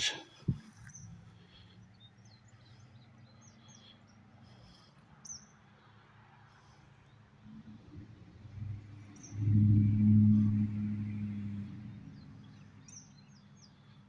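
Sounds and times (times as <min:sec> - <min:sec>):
low steady hum: 0:08.5 - 0:12.1.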